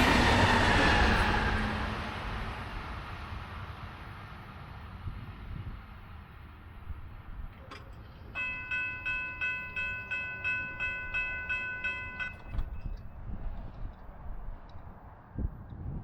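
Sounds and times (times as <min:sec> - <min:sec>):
railroad warning bell ringing: 0:07.6 - 0:13.9.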